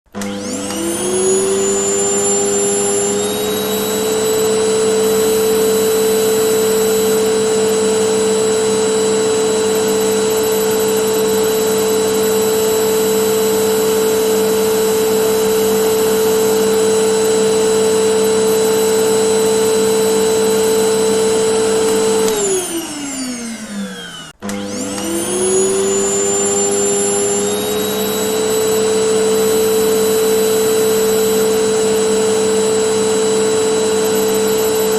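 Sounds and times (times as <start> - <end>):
vacuum cleaner motor whine: 0.1 - 34.9.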